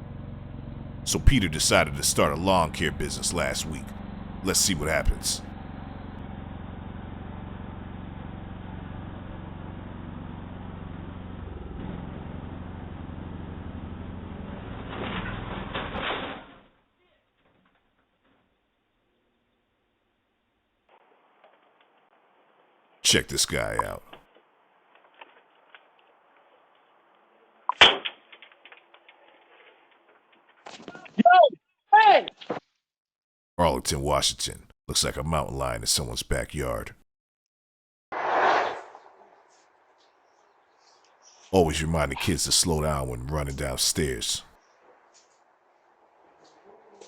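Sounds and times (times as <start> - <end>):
engine running steadily: 0.0 - 15.9.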